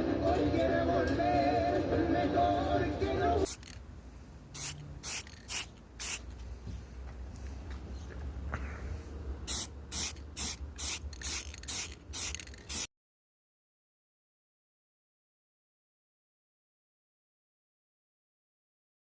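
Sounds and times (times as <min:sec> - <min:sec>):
short hissing sprays: 0:04.5 - 0:06.6, 0:09.5 - 0:12.9.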